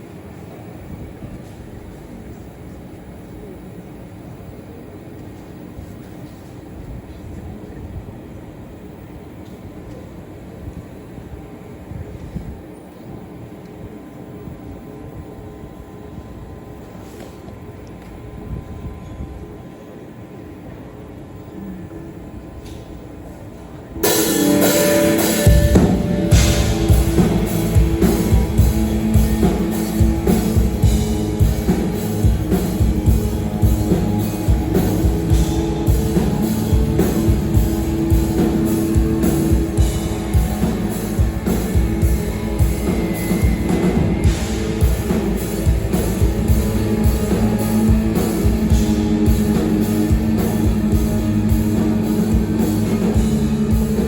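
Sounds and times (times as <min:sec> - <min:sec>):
sustained guitar: 0:23.9 - 0:54.0
drum kit pounding: 0:24.0 - 0:54.0
rock band playing live: 0:24.0 - 0:54.0.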